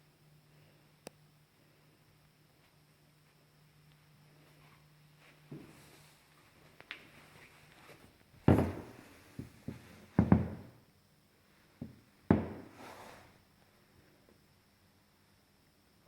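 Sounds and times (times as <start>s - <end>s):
knocks and thuds: 8.5s - 9.5s, 10.2s - 10.8s, 11.8s - 12.8s.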